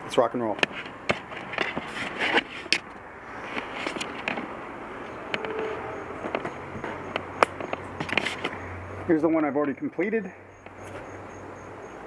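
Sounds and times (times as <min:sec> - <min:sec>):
handling clicks and knocks: 0:00.6 - 0:02.9, 0:03.5 - 0:09.9.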